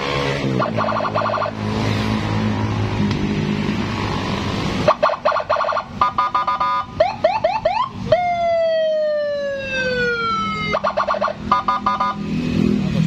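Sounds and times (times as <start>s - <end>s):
electronic car siren: 0.5s - 1.6s, 4.9s - 12.3s.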